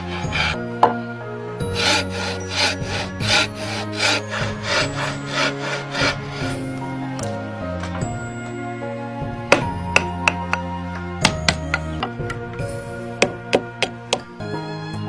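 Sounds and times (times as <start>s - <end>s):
hand tool working wood: 0.0s - 1.0s, 1.6s - 8.2s, 9.4s - 12.6s, 13.2s - 14.3s.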